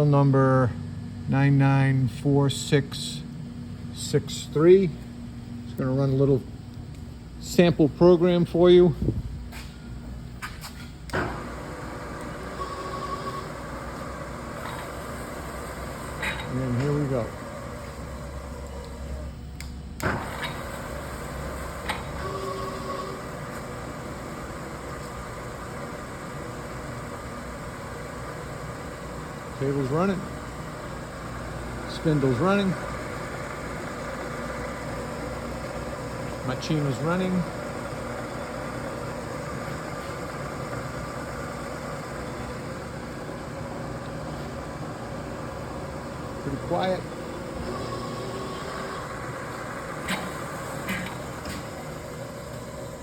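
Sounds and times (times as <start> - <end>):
steady machine hum: 0.0 - 53.0
brief machine whine: 11.1 - 26.0, 46.2 - 53.0.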